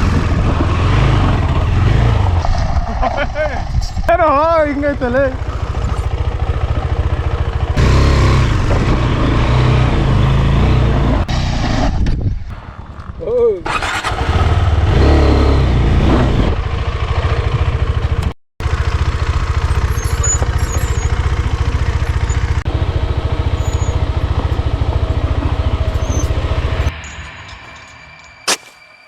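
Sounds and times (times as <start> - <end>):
motorcycle engine running: 4.1 - 11.2, 12.5 - 26.9.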